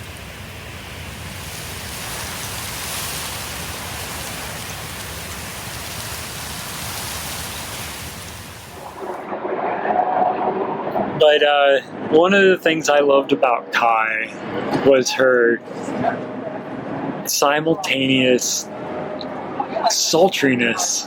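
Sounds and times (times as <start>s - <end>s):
steady rainfall hiss: 0.0s - 9.2s.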